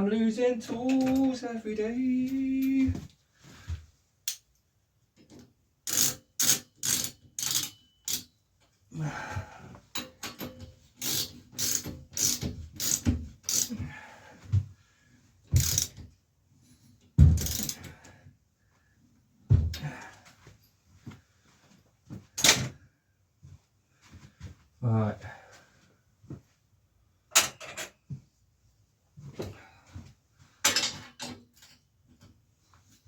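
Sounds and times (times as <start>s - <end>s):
ratchet wrench clicking: 5.9s - 8.3s, 11.0s - 13.7s, 15.6s - 15.9s, 17.4s - 17.8s.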